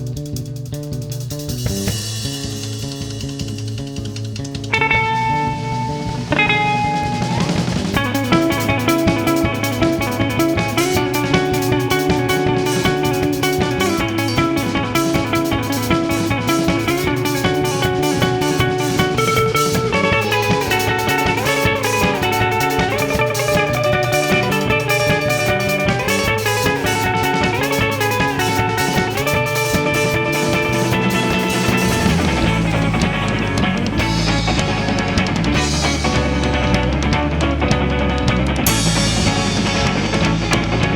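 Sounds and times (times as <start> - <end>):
guitar bending notes: 0.0 - 40.9
rock band playing: 0.0 - 40.9.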